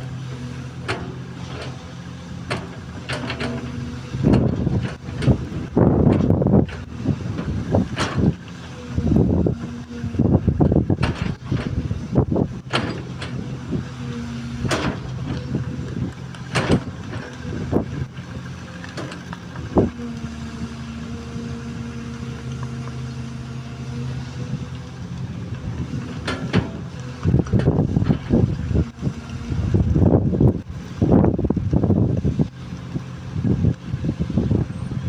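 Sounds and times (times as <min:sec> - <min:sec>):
excavator diesel engine running: 0:00.0 - 0:35.0
sharp knocks and clatter: 0:02.4 - 0:08.5, 0:11.0 - 0:11.8, 0:12.7 - 0:13.4, 0:14.6 - 0:17.5, 0:26.1 - 0:28.4.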